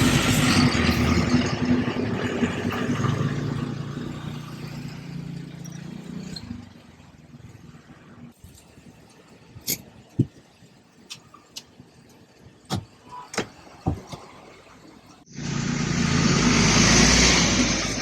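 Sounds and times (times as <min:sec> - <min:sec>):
car engine and road noise: 0:00.0 - 0:18.0
knocks and rattles from bumps: 0:12.7 - 0:14.5.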